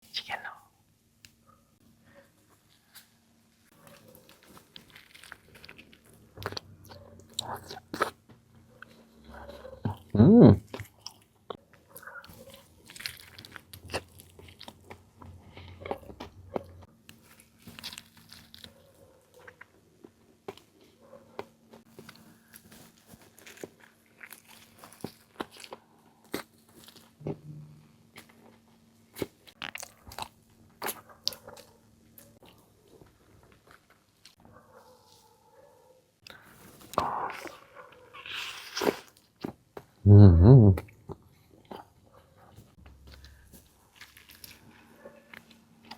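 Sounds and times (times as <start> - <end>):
soft chewing: 0.1 - 40.0, 40.8 - 45.9
crunching crispy food: 2.6 - 6.7, 10.7 - 16.4, 17.1 - 18.9, 21.9 - 27.2, 28.1 - 31.7, 36.3 - 39.7, 43.1 - 45.9.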